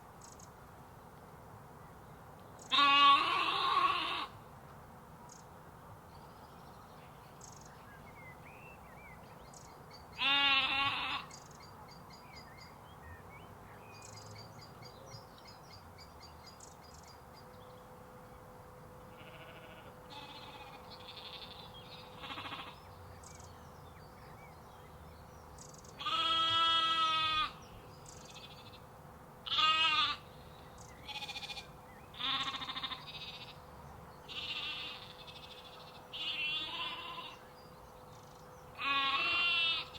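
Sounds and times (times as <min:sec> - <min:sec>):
sheep and lambs bleating: 0:02.7 - 0:04.4, 0:10.2 - 0:11.3, 0:19.1 - 0:22.8, 0:26.0 - 0:27.6, 0:28.2 - 0:28.8, 0:29.4 - 0:30.3, 0:31.0 - 0:37.5, 0:38.8 - 0:39.9.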